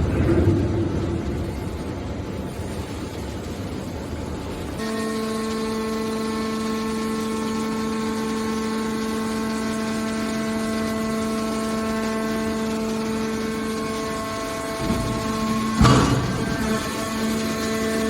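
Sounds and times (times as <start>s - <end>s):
baler machine hum: 0.0s - 18.0s
hydraulic pump whine: 0.0s - 18.0s.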